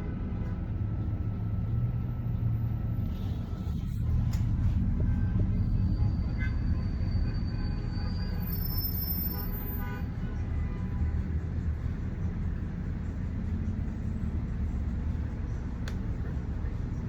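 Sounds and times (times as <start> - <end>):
rumble of passing vehicles: 0.0 - 17.0.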